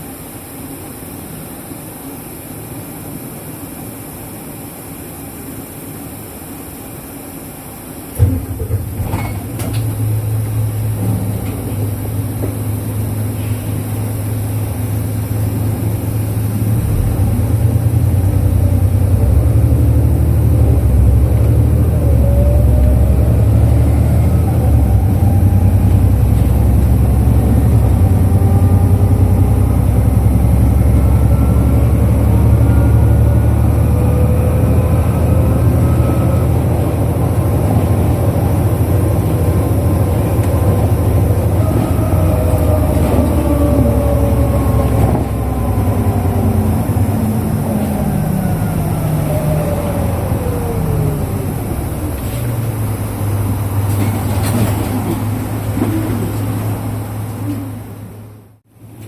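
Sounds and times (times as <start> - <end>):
bus engine drone: 0.0 - 59.0.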